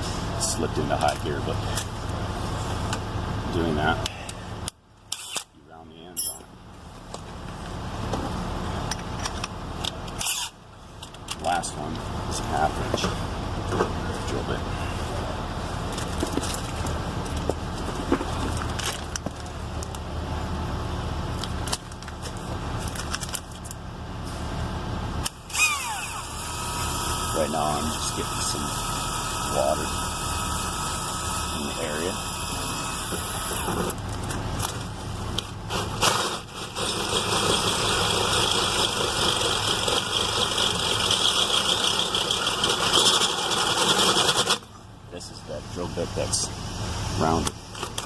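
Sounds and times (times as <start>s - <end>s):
steady low hum: 5.8s - 42.9s
cordless drill drilling steel: 25.4s - 34.0s, 36.6s - 44.6s.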